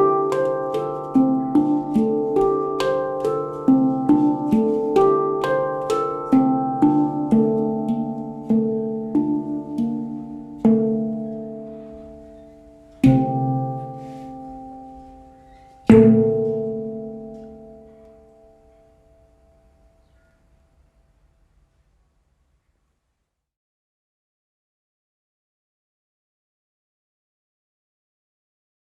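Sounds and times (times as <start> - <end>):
handpan notes ringing: 0.0 - 19.9.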